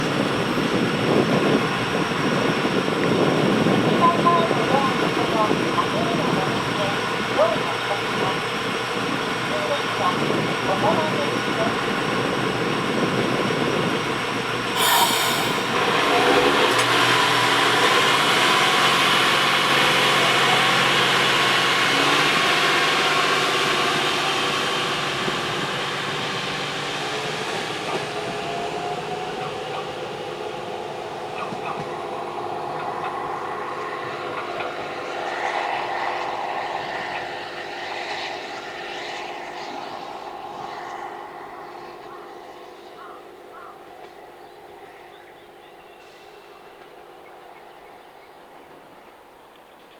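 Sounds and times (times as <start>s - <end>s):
diesel train engine: 0.0s - 49.9s
train wheels on rails: 5.3s - 36.5s
short sharp hiss: 14.8s - 16.2s.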